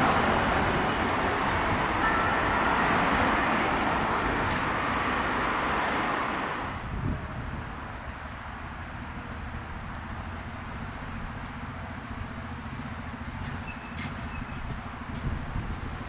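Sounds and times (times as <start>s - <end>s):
large vehicle engine running: 7.0s - 16.0s.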